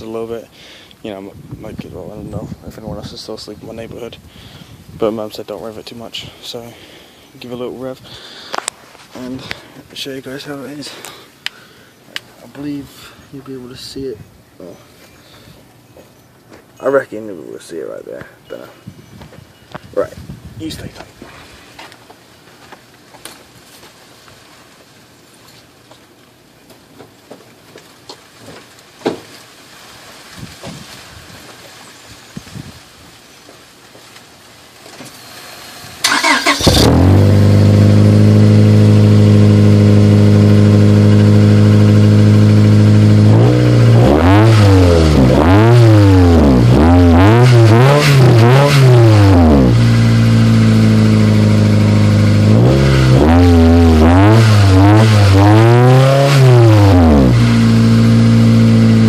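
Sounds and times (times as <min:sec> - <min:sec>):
car engine starting: 0:35.1 - 0:59.0
car engine idling: 0:35.3 - 0:46.7, 0:47.8 - 0:55.4, 0:56.7 - 0:59.0
car engine revving: 0:36.0 - 0:59.0.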